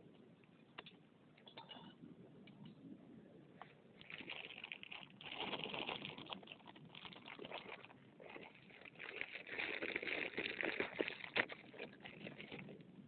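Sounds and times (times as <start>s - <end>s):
campfire crackling: 3.6s - 13.0s.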